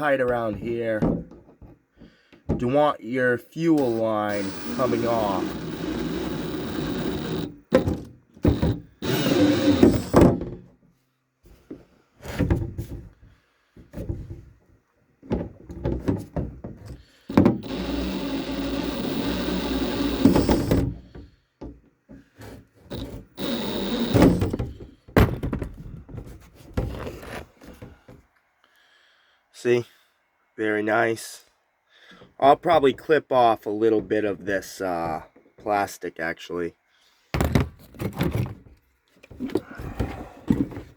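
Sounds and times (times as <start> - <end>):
scraping and rubbing: 3.8 - 10.2, 17.4 - 20.8, 22.9 - 24.6.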